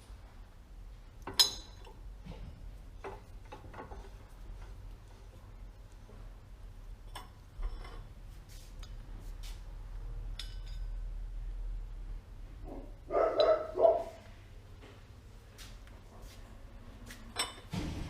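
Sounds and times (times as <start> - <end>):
low steady hum: 0.0 - 18.0
dog barking: 12.7 - 14.2.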